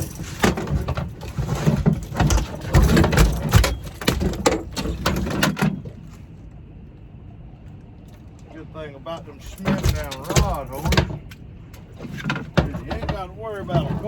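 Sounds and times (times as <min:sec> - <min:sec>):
knocking and clattering: 0:00.0 - 0:05.8.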